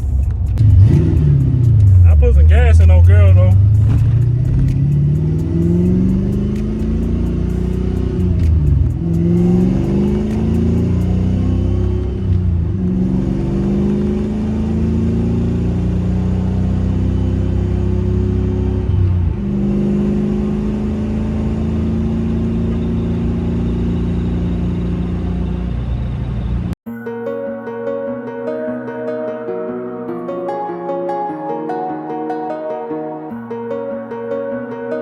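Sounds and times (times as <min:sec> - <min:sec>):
car engine accelerating through gears: 0:00.0 - 0:26.8.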